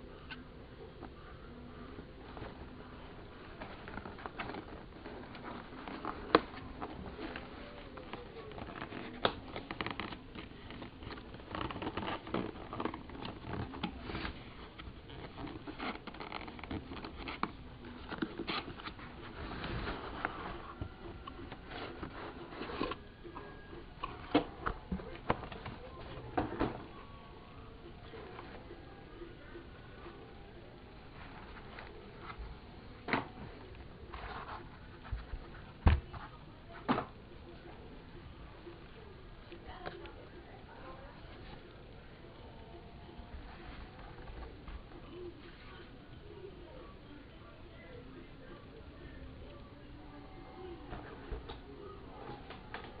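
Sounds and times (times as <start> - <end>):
packaging rustling and scraping: 2.0 - 27.0.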